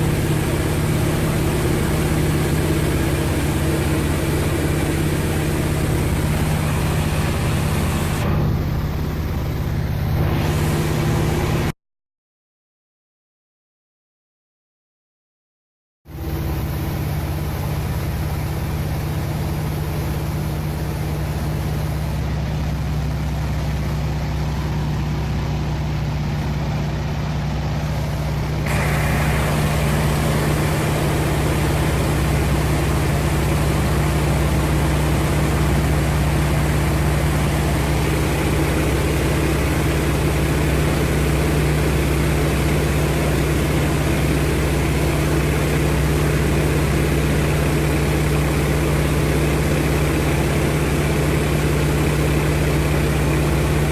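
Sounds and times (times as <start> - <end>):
propeller plane engine drone: 0.0 - 11.7, 16.1 - 53.9.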